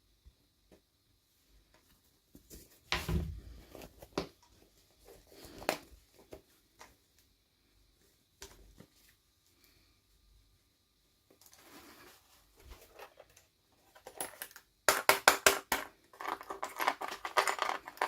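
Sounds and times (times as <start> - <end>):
plastic toy pieces clicking: 14.2 - 18.0.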